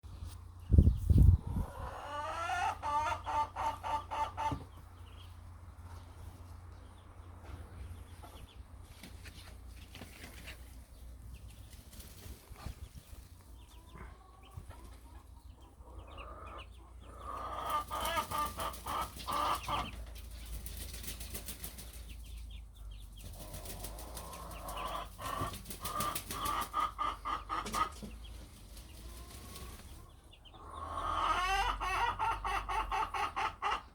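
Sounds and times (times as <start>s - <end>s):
ducks quacking: 13.6s - 20.0s, 23.4s - 28.3s.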